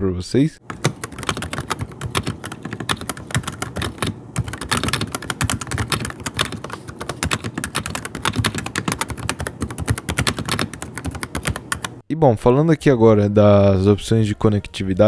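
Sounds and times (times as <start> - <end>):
typing on mechanical keyboard: 0.6 - 12.0.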